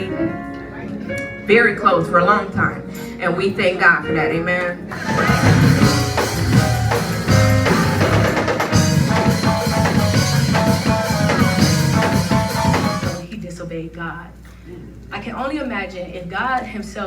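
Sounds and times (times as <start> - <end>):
church band music: 4.4 - 13.3
drum kit beat: 4.9 - 13.3.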